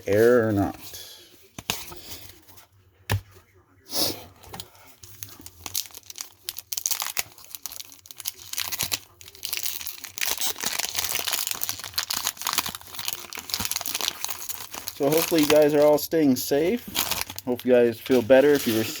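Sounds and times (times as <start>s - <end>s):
wax paper wrapper crinkling: 4.8s - 19.0s.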